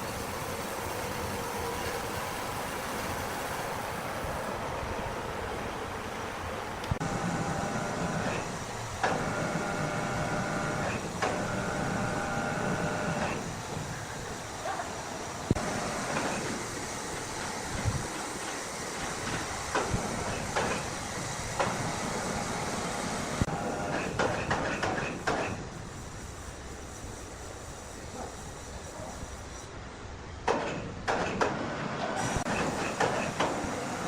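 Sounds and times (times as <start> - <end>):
multi-tone machine whine: 7.0 - 17.2
knocks and clanks: 23.9 - 25.6, 30.4 - 33.7.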